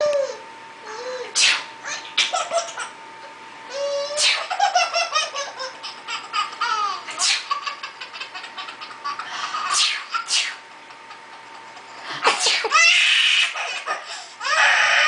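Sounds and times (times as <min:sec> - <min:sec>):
sharp sneezes: 0:01.4 - 0:01.7, 0:04.2 - 0:04.5, 0:07.2 - 0:07.5, 0:09.7 - 0:10.6, 0:12.3 - 0:12.7
baby laughing: 0:01.9 - 0:03.0, 0:03.7 - 0:15.0.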